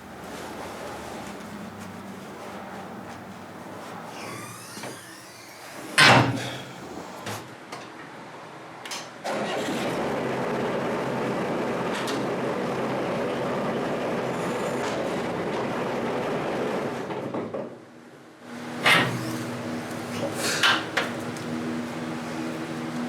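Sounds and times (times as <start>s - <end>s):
loader engine starting and running: 0.0s - 7.4s, 18.5s - 23.0s.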